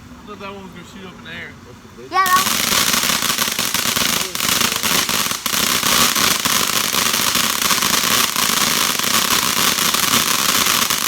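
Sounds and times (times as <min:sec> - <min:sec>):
ground fountain firework hissing: 0:01.6 - 0:11.0
dense firework crackling: 0:02.2 - 0:11.0.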